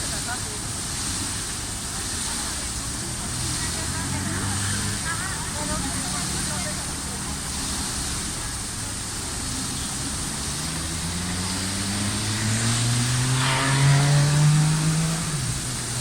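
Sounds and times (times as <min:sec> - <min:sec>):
vehicle engine accelerating: 0:03.3 - 0:08.3, 0:09.4 - 0:16.0.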